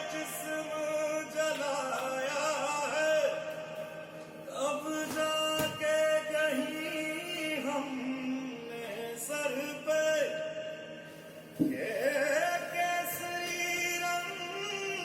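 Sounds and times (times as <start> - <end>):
man singing with instruments: 0.0 - 15.0.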